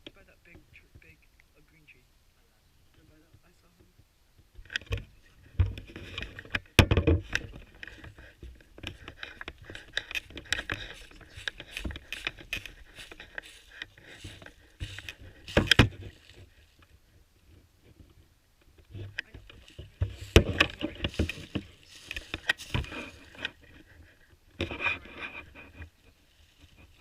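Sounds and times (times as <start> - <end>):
rustling through dry leaves: 7.4 - 17.0, 19.0 - 24.2, 25.0 - 27.0.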